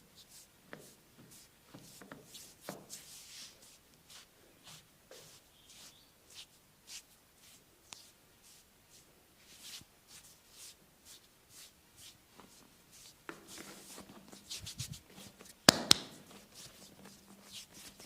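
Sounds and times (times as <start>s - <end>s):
hands rubbing bare skin: 0.2s - 18.0s
sharp loud snaps: 15.6s - 16.2s.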